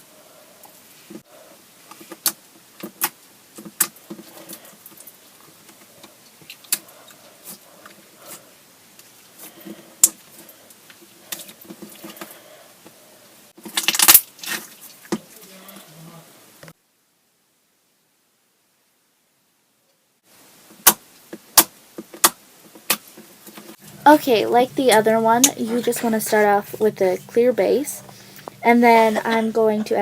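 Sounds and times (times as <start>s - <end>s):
slime crackling: 23.8s - 30.0s.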